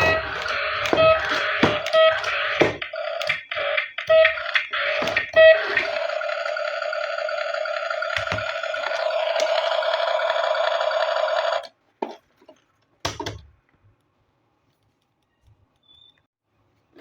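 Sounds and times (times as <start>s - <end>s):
toy vehicle buzzing: 0.0s - 11.7s.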